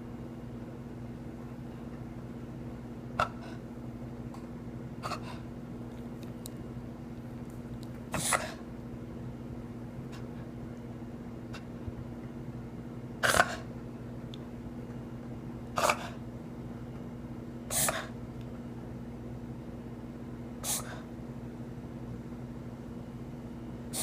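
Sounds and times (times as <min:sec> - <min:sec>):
dog snorting: 0:03.2 - 0:03.6, 0:05.0 - 0:05.5, 0:08.1 - 0:08.6, 0:13.2 - 0:13.7, 0:15.8 - 0:16.2, 0:17.7 - 0:18.2, 0:20.6 - 0:21.1.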